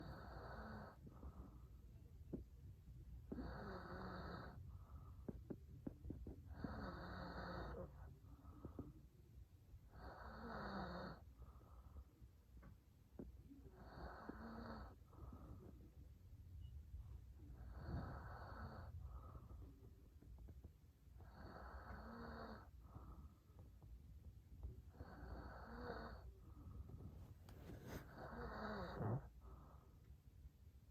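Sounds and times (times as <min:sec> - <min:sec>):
man snoring: 0:00.0 - 0:01.0, 0:03.3 - 0:04.6, 0:06.5 - 0:08.0, 0:09.9 - 0:11.2, 0:13.8 - 0:15.0, 0:17.6 - 0:18.9, 0:21.2 - 0:22.7, 0:24.9 - 0:26.2, 0:28.1 - 0:29.3
man snoring faintly: 0:00.0 - 0:01.8, 0:03.2 - 0:09.1, 0:09.9 - 0:12.2, 0:13.2 - 0:16.0, 0:17.4 - 0:20.0, 0:21.2 - 0:23.8, 0:24.6 - 0:29.9
soft breath: 0:00.0 - 0:02.6, 0:04.4 - 0:07.0, 0:07.6 - 0:10.0, 0:11.1 - 0:30.6.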